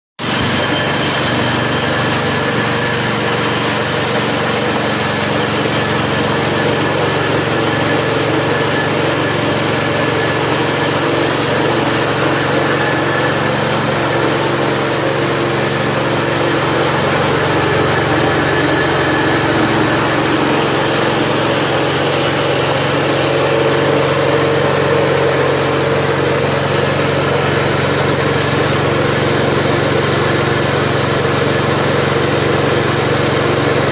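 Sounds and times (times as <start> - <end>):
grain machine humming: 0.2 - 33.9.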